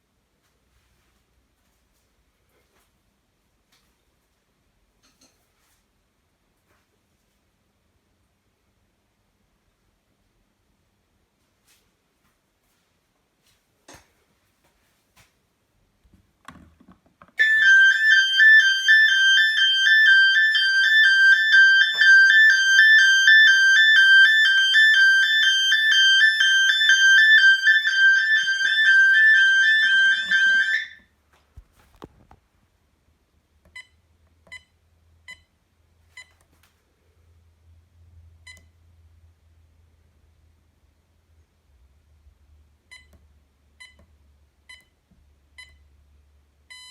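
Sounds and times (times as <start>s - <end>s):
two-tone burglar alarm siren: 17.4s - 31.1s.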